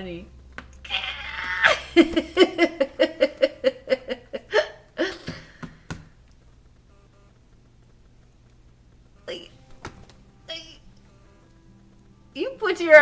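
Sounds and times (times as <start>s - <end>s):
woman laughing hard: 1.4s - 5.5s.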